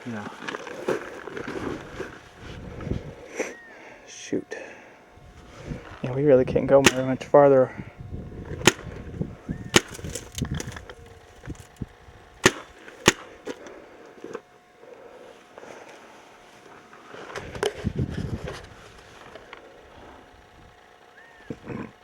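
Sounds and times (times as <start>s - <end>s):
rustling and knocks of movement: 0.0s - 3.6s, 7.9s - 21.7s
paintball marker shots: 6.8s - 7.3s, 8.5s - 9.1s, 9.7s - 11.7s, 12.4s - 13.6s.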